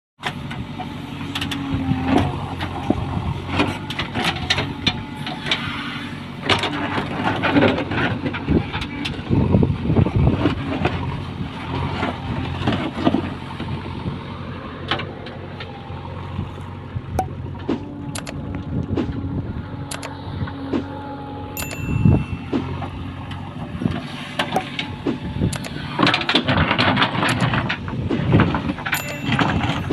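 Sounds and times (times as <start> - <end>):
engine running: 0.2 - 29.9
clanks and knocks of building work: 22.4 - 29.9.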